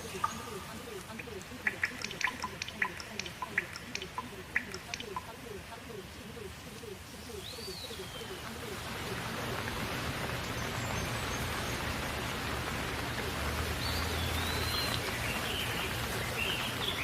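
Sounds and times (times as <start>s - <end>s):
bird chirping: 0.0s - 9.1s
rain falling: 0.0s - 17.0s.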